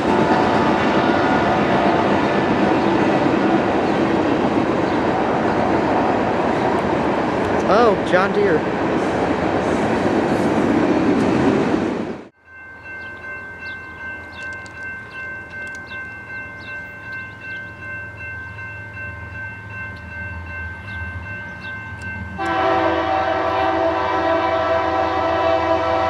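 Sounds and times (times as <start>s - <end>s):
locomotive air horn blasting: 0.0s - 2.1s, 22.4s - 26.0s
passing train rumble: 0.0s - 26.0s
steady high ringing tone: 12.3s - 22.9s
bird chirps: 12.8s - 18.6s, 20.7s - 22.2s.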